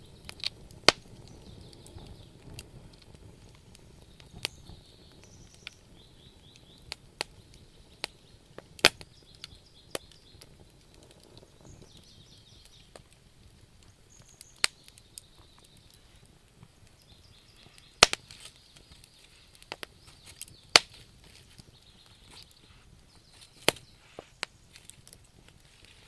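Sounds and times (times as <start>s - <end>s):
faint steady hiss: 0.0s - 26.0s
wood fire crackling: 0.0s - 26.0s.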